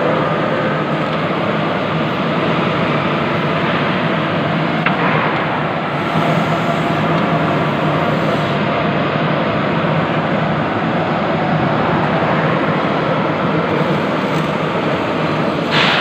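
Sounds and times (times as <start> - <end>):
welding arc crackling: 13.6 - 16.0.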